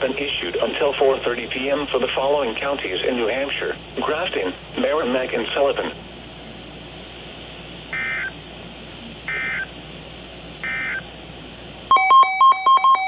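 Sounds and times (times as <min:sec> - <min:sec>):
radio hiss: 0:00.0 - 0:07.0, 0:07.9 - 0:09.8.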